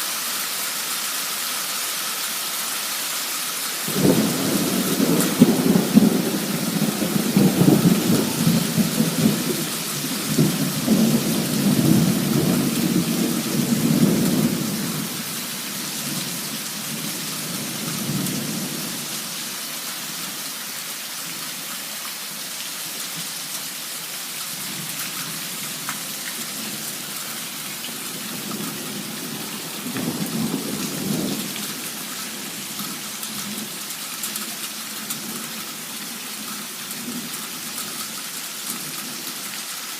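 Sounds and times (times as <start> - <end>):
heavy rain hissing: 0.0 - 39.9
thunder rumbling: 3.9 - 15.3.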